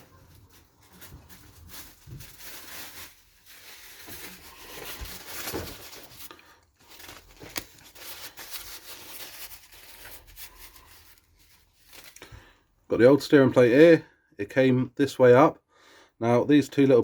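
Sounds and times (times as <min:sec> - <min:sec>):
rustling and rubbing while wiping: 0:00.0 - 0:12.2.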